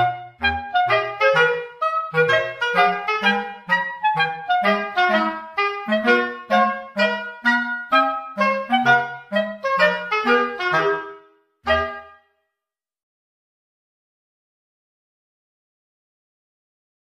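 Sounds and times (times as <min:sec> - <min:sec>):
instrumental background music: 0:00.0 - 0:12.4.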